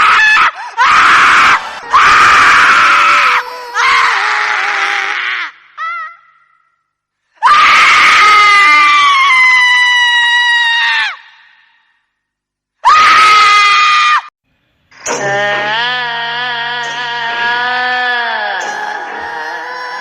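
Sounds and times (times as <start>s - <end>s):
high-pitched female scream: 15.1s - 20.0s.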